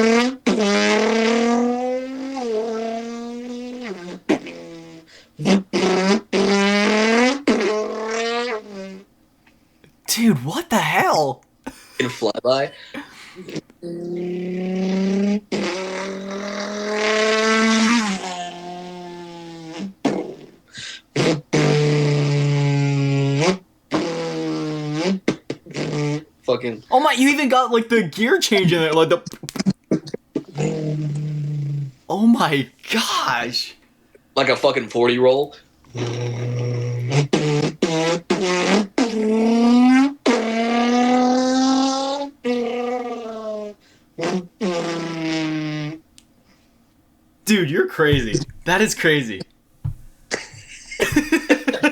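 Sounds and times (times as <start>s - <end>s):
person imitating car engine: 10.1s - 12.2s
man imitating car engine: 10.1s - 12.3s, 13.0s - 13.4s, 32.1s - 33.7s, 47.5s - 49.4s, 51.0s - 51.9s.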